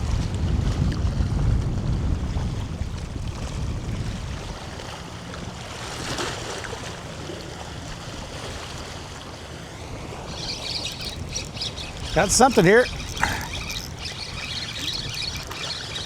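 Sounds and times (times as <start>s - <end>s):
wind buffeting microphone: 0.0s - 5.7s, 8.0s - 16.0s
water washing along shore: 0.0s - 16.0s.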